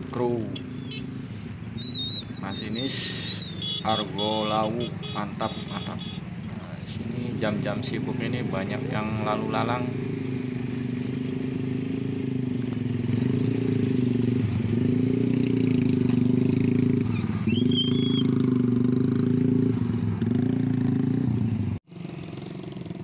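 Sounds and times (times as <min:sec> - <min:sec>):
motorcycle engine revving: 0:00.0 - 0:23.0
high chirp: 0:01.8 - 0:05.0, 0:17.5 - 0:18.4.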